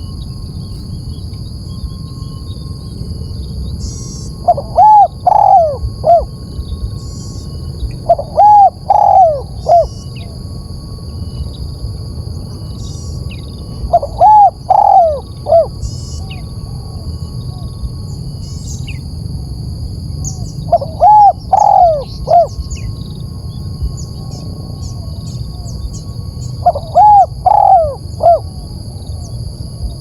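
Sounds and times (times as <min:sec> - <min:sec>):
dove cooing: 0:03.8 - 0:06.4, 0:07.0 - 0:10.4, 0:13.8 - 0:17.8, 0:20.2 - 0:23.0, 0:23.9 - 0:30.0.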